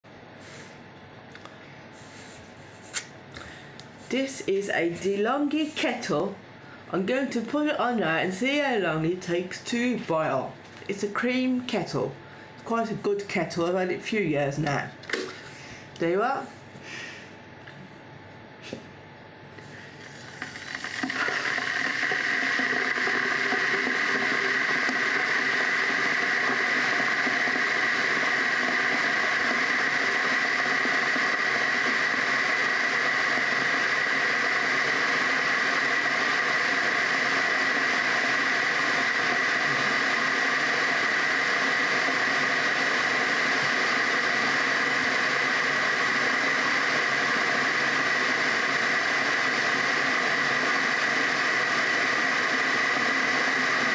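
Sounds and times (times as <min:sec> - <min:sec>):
electric kettle heating water: 0:14.6 - 0:15.5, 0:19.5 - 0:53.9.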